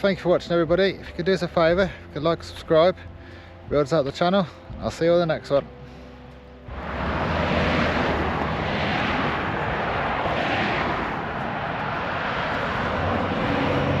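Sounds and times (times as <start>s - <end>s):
loud steady rushing noise: 6.6s - 14.0s.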